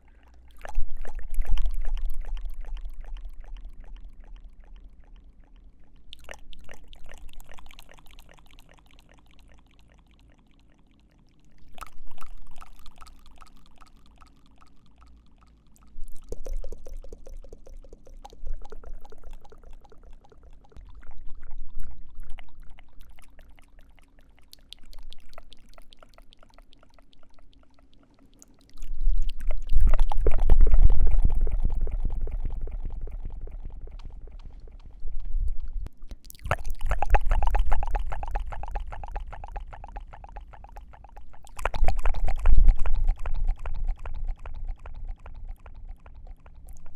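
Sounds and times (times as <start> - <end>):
breath at the microphone: 0.0 - 0.5
wet mouth clicks and smacks: 0.0 - 21.0, 22.1 - 46.9.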